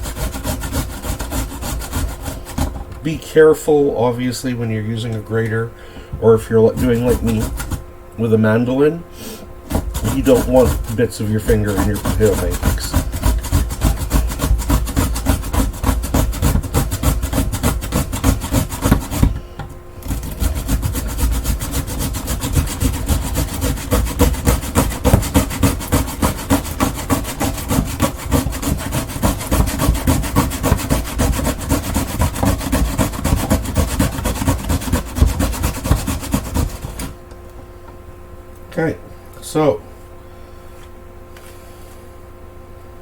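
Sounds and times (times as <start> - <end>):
potato rasping on a grater: 0.0 - 2.8, 6.3 - 7.9, 9.7 - 37.2.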